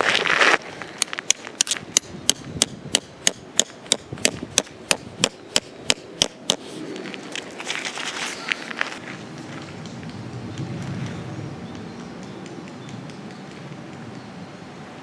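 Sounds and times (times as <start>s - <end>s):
hammer striking tent peg: 2.6s - 6.6s.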